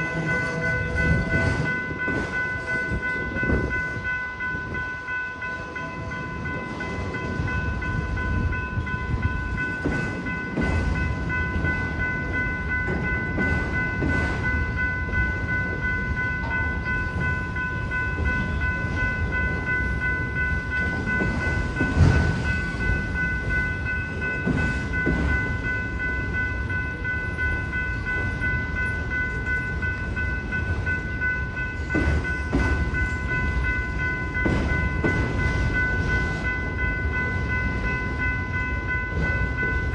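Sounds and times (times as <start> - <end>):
freight train rumble: 0.0 - 39.9
train wheels knocking on rail: 7.0 - 15.3, 20.8 - 26.0, 29.0 - 36.6.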